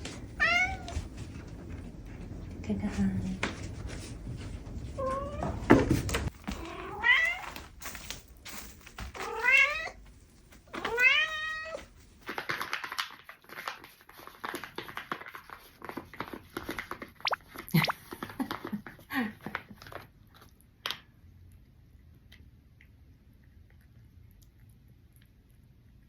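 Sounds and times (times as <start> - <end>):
cat meowing: 0.4 - 1.0.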